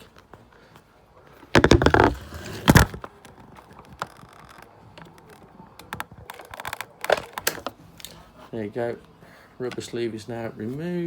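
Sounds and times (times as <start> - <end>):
faint clicks and scrapes: 0.0 - 8.6
camera rubbing bump: 1.6 - 3.0.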